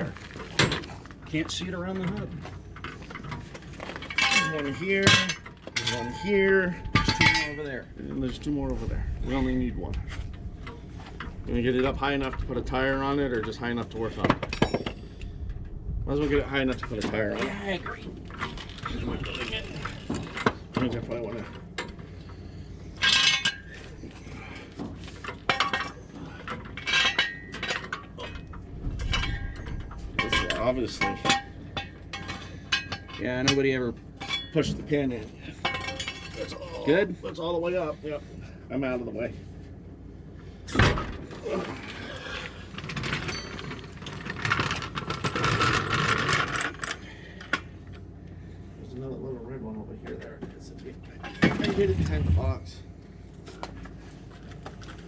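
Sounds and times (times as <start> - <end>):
metallic rattling: 2.8 - 8.5, 25.2 - 34.7
heavy metal clunk: 2.9 - 7.9
ringing metal clanks: 4.0 - 8.3, 22.9 - 23.8, 25.3 - 36.8, 43.0 - 43.9.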